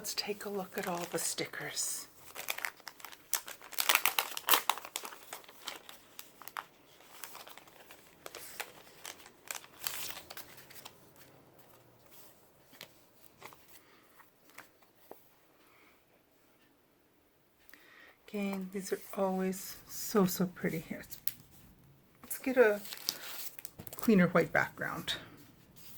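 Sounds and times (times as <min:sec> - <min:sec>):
sticker sheets crinkling: 0:00.0 - 0:15.3, 0:20.6 - 0:21.6, 0:22.2 - 0:25.2.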